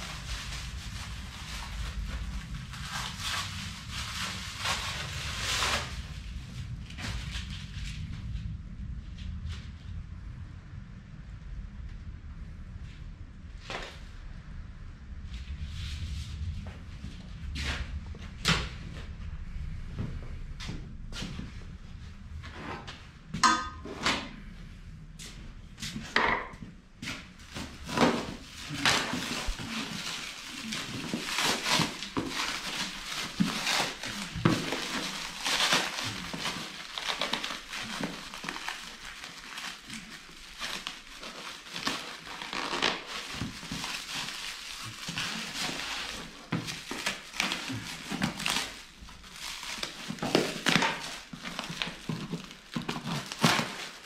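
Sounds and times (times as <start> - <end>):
wrapping crinkling and rustling: 0.0 - 8.5, 27.0 - 54.0.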